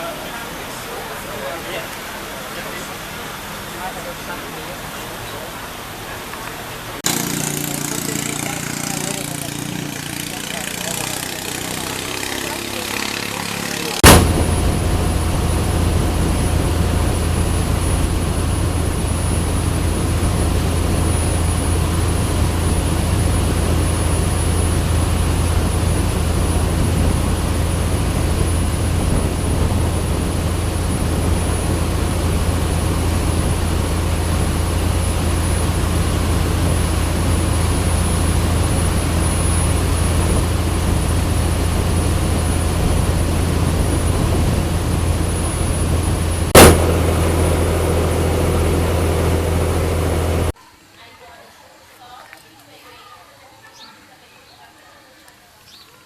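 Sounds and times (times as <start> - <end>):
boat engine running: 7.0 - 50.6.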